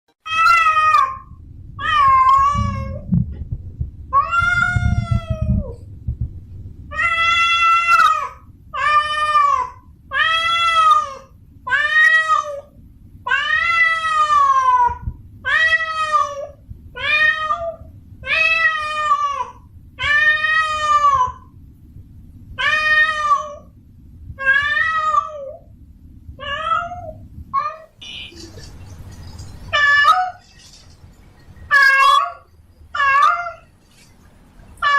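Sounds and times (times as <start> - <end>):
low rumbling background noise: 0.2 - 34.9
cat yowling: 0.3 - 3.0, 4.2 - 5.5, 6.9 - 12.7, 13.3 - 21.5, 29.7 - 30.4, 31.7 - 33.7.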